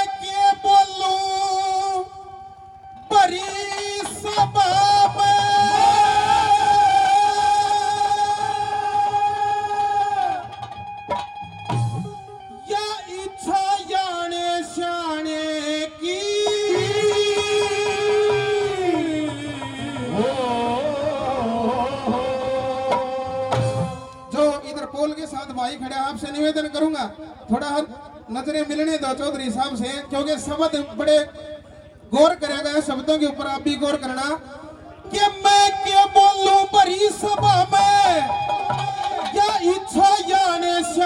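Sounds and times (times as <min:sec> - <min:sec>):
folk music with wavering notes: 0:00.1 - 0:25.0, 0:34.5 - 0:41.0.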